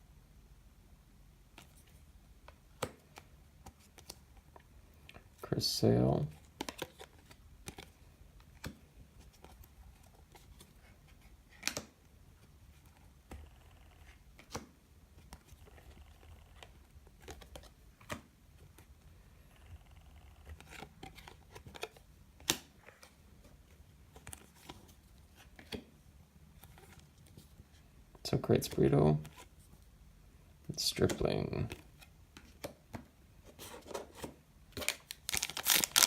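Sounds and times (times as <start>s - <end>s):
trading cards clicking and snapping: 11.6s - 11.9s, 34.8s - 36.0s.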